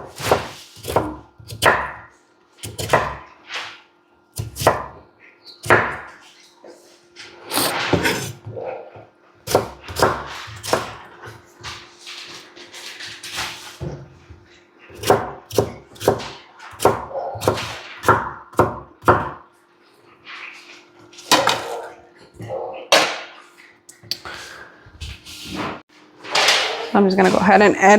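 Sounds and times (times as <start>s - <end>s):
knife chopping on wooden board: 0.0s - 3.3s, 4.4s - 5.0s, 5.6s - 6.2s, 9.5s - 11.0s, 15.0s - 19.4s.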